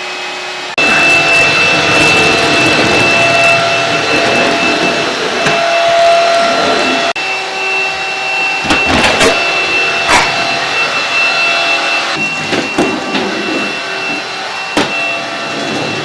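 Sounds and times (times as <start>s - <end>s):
stick vacuum cleaner motor whine: 0.0s - 16.0s
vacuum knocking: 7.7s - 16.0s.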